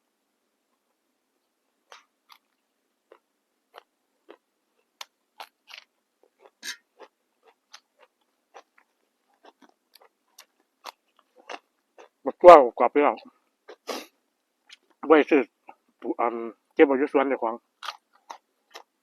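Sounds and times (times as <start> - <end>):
person chewing crunchy vegetables: 1.8 - 12.4, 13.6 - 15.0, 17.6 - 19.0.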